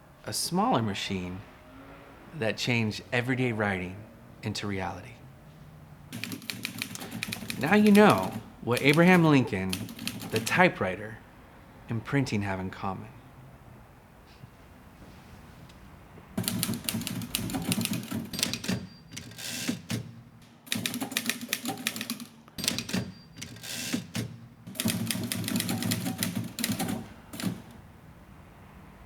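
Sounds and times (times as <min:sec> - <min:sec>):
typewriter key clacks: 0:06.2 - 0:10.5, 0:16.4 - 0:20.1, 0:20.7 - 0:27.7.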